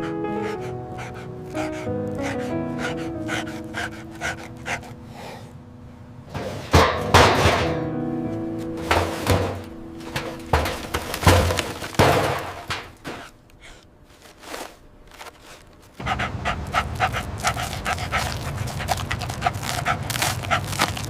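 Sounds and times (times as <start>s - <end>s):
dog panting: 0.0s - 5.5s, 16.0s - 21.0s
thumps: 6.3s - 13.4s.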